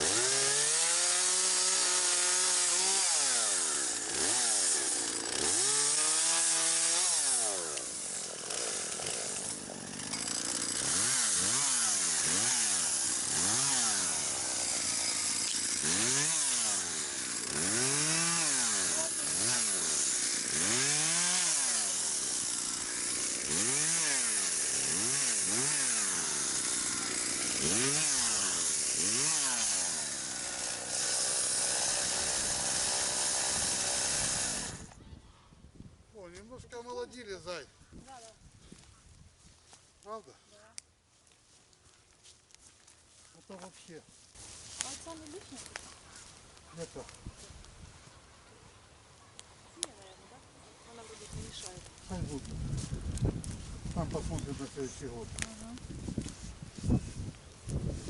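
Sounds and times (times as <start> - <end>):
chainsaw revving: 0.0 - 34.9.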